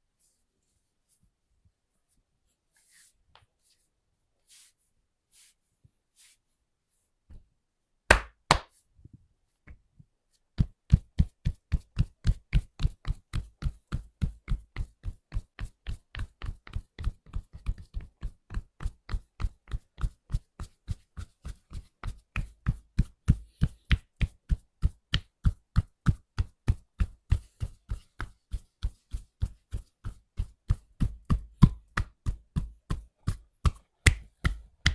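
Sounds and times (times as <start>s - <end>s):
hands striking body: 8.1s - 8.8s, 31.2s - 34.9s
hard slaps: 8.1s - 8.8s.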